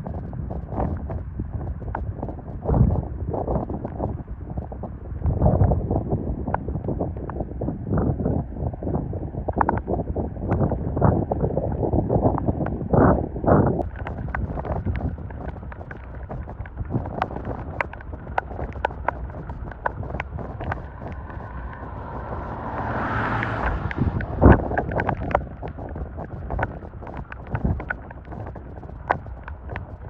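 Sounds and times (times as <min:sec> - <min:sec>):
wind buffeting microphone: 0:00.0 - 0:30.0
sharp ticks and taps: 0:13.8 - 0:22.6, 0:23.4 - 0:30.0.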